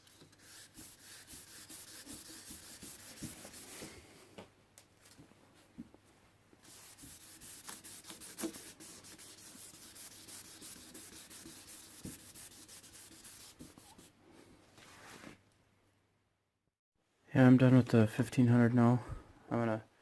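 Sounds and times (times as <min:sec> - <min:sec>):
sandpaper rubbing on plastic: 0:00.1 - 0:03.9, 0:06.6 - 0:14.1.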